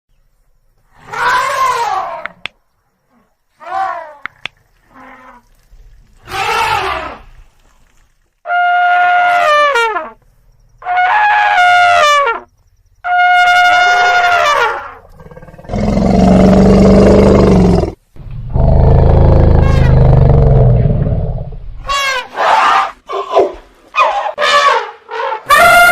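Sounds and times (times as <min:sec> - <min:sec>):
elephant trumpeting: 0:06.2 - 0:07.3, 0:13.2 - 0:17.9, 0:21.8 - 0:25.9
deep rough elephant roar: 0:15.1 - 0:21.5.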